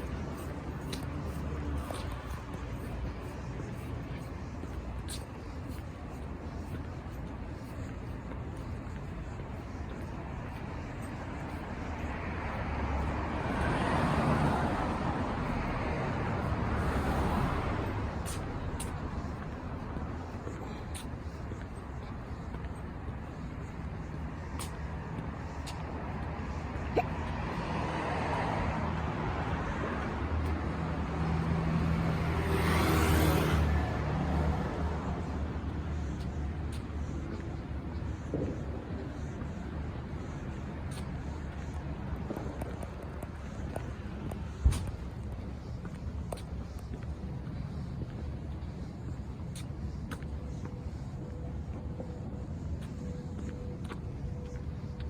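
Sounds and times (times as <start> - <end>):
steady traffic noise: 0.0 - 55.0
car passing: 11.7 - 20.3, 27.3 - 37.8.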